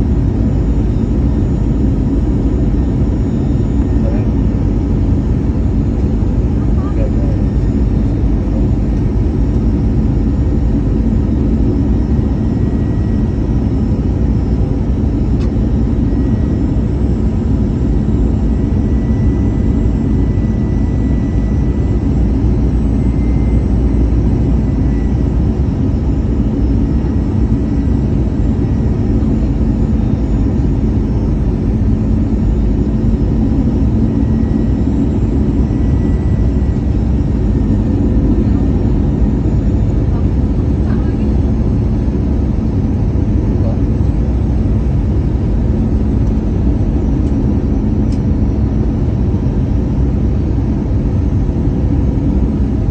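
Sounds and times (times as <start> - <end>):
jet engine and airflow noise: 0.0 - 52.9.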